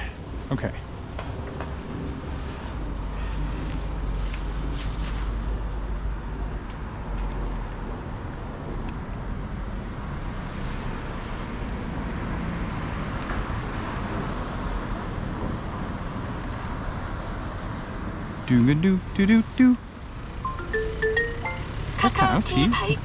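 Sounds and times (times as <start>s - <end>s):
faint high rapid chirping: 20.1s - 21.8s.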